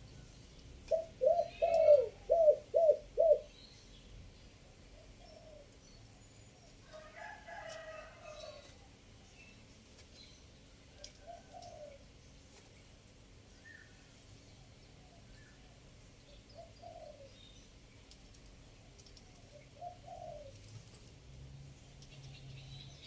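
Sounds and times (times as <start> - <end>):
dove cooing: 0.9 - 3.5, 11.0 - 12.0, 16.6 - 17.4, 19.5 - 20.7.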